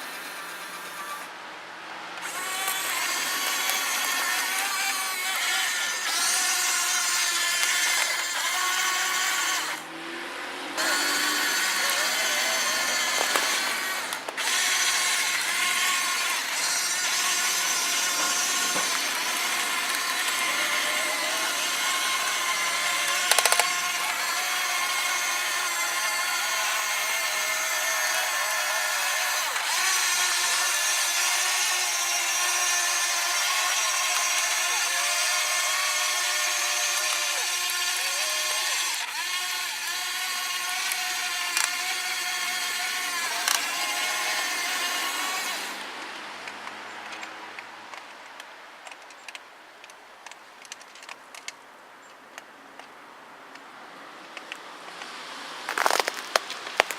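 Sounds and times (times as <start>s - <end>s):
electric gear motors whining: 0.0s - 1.3s, 2.2s - 45.8s.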